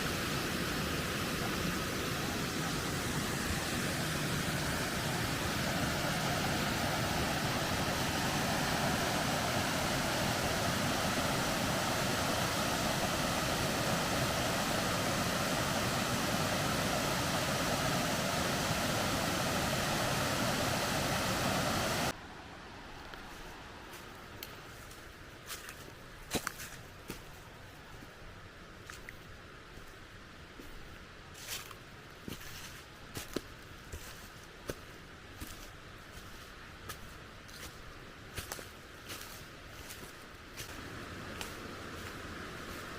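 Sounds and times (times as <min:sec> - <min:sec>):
waterfall rushing: 0:00.0 - 0:22.2, 0:40.7 - 0:42.9.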